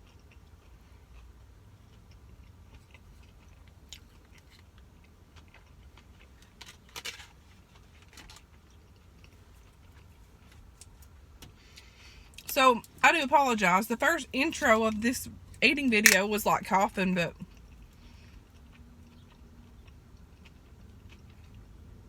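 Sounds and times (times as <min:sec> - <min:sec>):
person chewing crunchy food: 0:00.0 - 0:11.0, 0:17.0 - 0:22.0.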